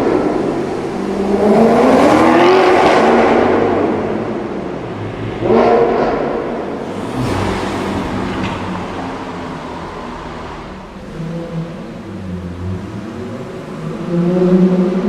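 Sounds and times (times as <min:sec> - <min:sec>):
car engine accelerating hard: 0:00.0 - 0:15.0.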